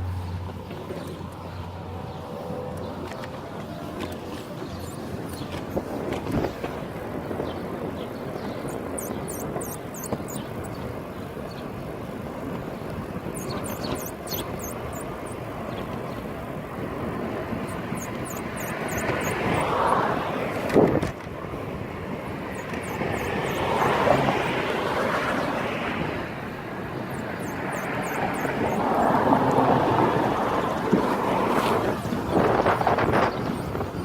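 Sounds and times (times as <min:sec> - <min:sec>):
wind rushing over microphone: 0:00.9 - 0:34.0
faint high-pitched bicycle squeaks: 0:03.9 - 0:06.5, 0:08.4 - 0:11.7, 0:13.2 - 0:15.9, 0:17.6 - 0:20.1, 0:22.4 - 0:24.6, 0:27.0 - 0:29.2.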